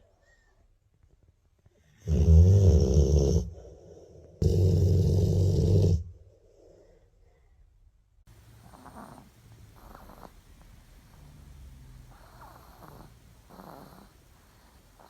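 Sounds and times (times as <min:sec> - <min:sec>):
dog snoring: 0:01.8 - 0:06.2, 0:08.4 - 0:15.0
dog breathing: 0:08.4 - 0:15.0.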